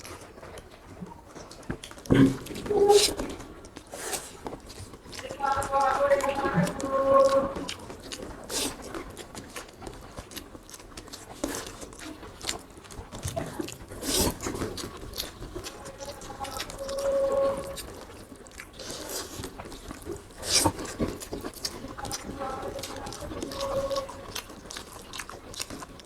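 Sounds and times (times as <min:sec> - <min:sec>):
person chewing food: 0:08.0 - 0:15.7, 0:23.0 - 0:26.0.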